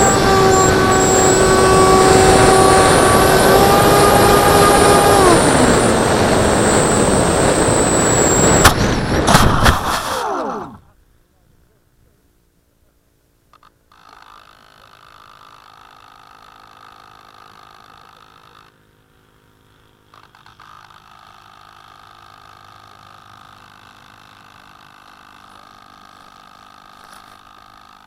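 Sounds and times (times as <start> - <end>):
electric ducted fan whine: 0.0 - 10.9.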